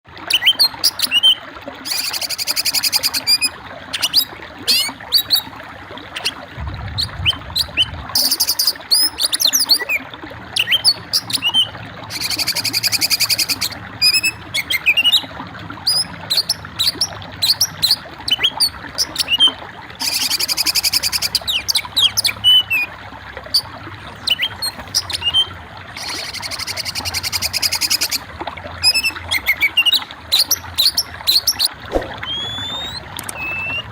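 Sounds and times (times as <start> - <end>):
songbirds chirping and whistling: 0.3 - 5.5, 6.1 - 10.0, 10.6 - 15.3, 24.2 - 28.2, 28.8 - 33.9
fast high bird trill: 32.2 - 33.9.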